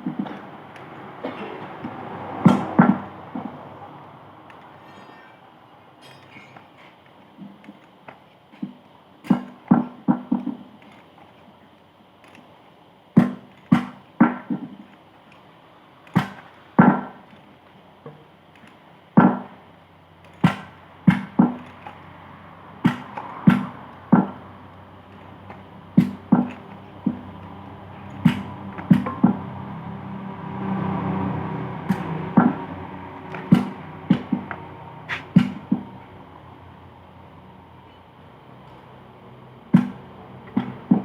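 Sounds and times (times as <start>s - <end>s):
hammer striking metal: 2.4s - 3.6s, 4.6s - 6.8s, 9.2s - 10.6s, 13.2s - 14.7s, 16.1s - 17.2s, 20.3s - 22.0s, 22.8s - 24.5s, 26.0s - 29.6s, 31.9s - 36.0s, 39.7s - 41.0s.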